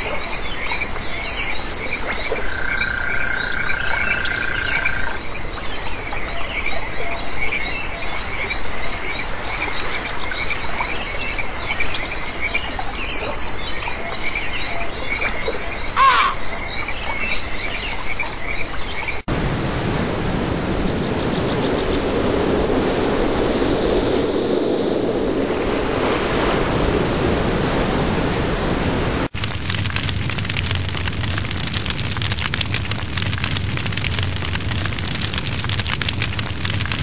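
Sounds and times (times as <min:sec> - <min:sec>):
frogs chirping: 0:00.0 - 0:19.3.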